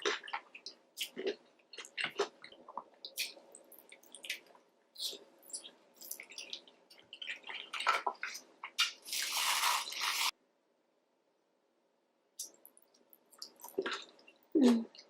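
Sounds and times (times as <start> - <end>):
wet chewing and smacking: 0.0 - 9.1, 12.4 - 15.0.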